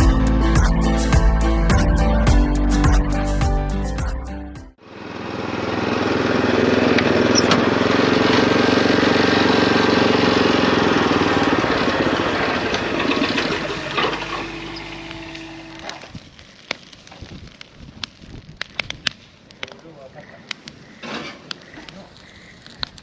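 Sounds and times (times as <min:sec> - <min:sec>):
small engine running: 0:04.9 - 0:15.8.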